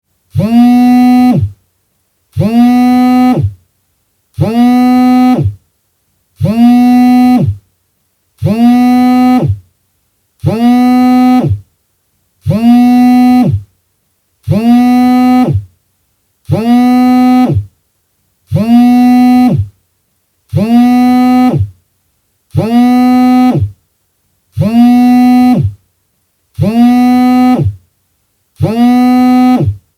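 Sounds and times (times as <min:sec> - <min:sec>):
mobile phone vibrating: 0:00.3 - 0:01.6, 0:02.3 - 0:03.6, 0:04.4 - 0:05.6, 0:06.4 - 0:07.6, 0:08.4 - 0:09.7, 0:10.4 - 0:11.7, 0:12.4 - 0:13.7, 0:14.4 - 0:15.7, 0:16.5 - 0:17.8, 0:18.5 - 0:19.8, 0:20.5 - 0:21.8, 0:22.5 - 0:23.8, 0:24.6 - 0:25.8, 0:26.6 - 0:27.8, 0:28.6 - 0:29.9.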